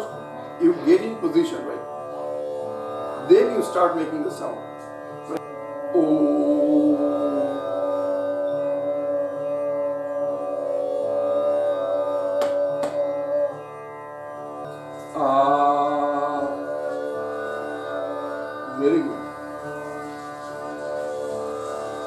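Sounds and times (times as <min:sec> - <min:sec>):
instrumental drone: 0:05.2 - 0:22.0
person singing held vowels: 0:06.0 - 0:08.4.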